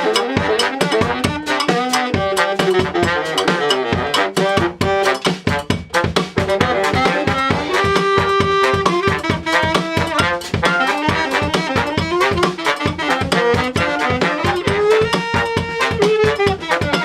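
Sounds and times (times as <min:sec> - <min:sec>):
horn melody: 0:00.0 - 0:17.0
low brass bass line: 0:00.0 - 0:17.0
percussive beat: 0:00.0 - 0:17.0.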